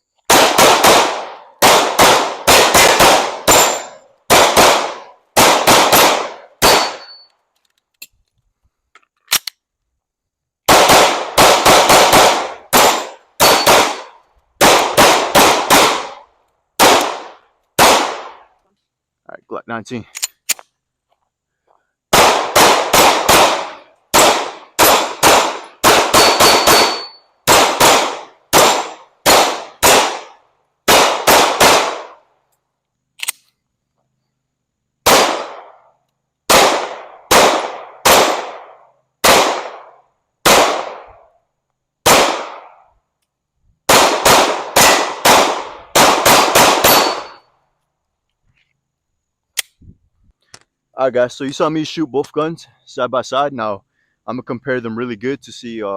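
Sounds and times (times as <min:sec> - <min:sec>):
pistol shots: 0:00.3 - 0:07.2, 0:10.7 - 0:18.5, 0:22.1 - 0:32.2, 0:35.0 - 0:35.8, 0:36.5 - 0:41.2, 0:42.0 - 0:42.8, 0:43.9 - 0:47.4.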